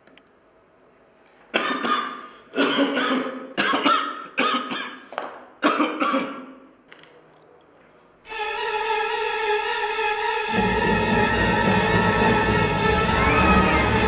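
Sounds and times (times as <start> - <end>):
person coughing: 1.5 - 6.6.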